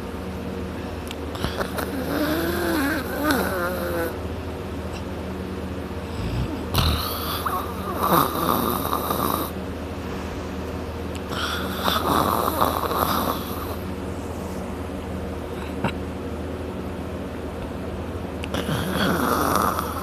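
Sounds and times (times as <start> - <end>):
steady low hum: 0.0 - 20.0
person snoring loudly: 1.4 - 4.2, 6.0 - 9.6, 11.3 - 13.8, 18.5 - 20.0.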